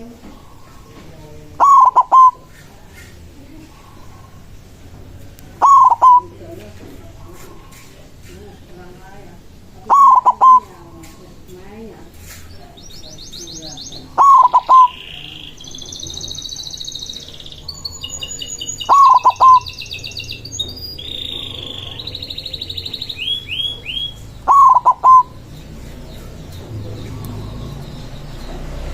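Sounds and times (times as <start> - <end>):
dove cooing: 0.0 - 2.6, 5.5 - 7.9, 9.8 - 11.3, 13.1 - 20.1, 21.0 - 28.1
small songbirds chirping: 0.0 - 28.9.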